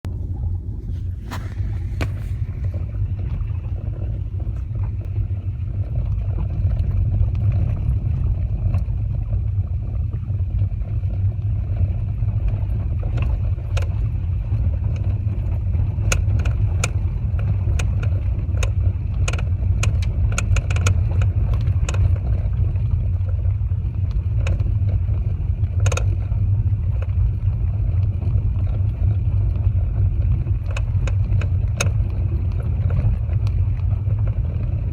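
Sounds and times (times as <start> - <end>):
car road noise rumble: 0.1 - 34.9
shock absorber knocks: 1.2 - 2.8.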